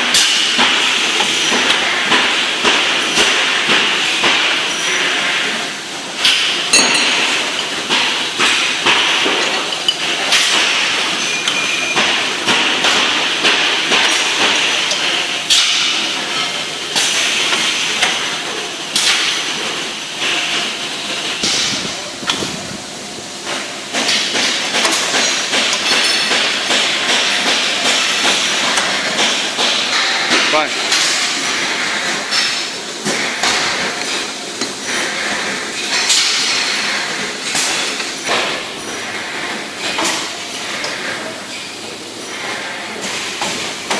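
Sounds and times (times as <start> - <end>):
metal knocks and clanks: 6.3 - 17.1.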